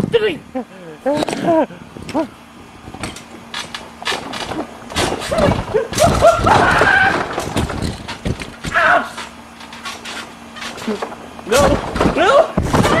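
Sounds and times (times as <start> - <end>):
light knocks and clatters: 2.9 - 13.0
person making strained cries: 8.7 - 9.2.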